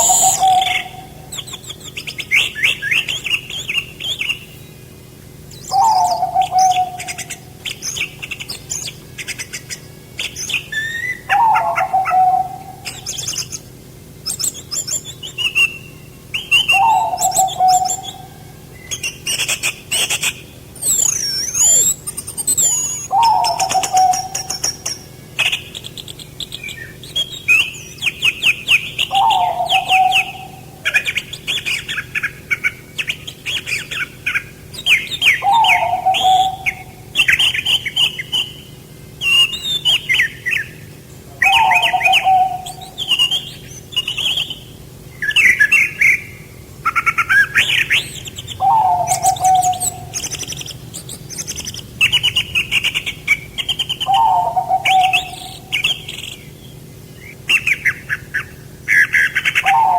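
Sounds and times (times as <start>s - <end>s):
falling whistled bird call: 0.0s - 4.9s, 5.5s - 59.9s
songbirds chirping: 0.0s - 59.9s.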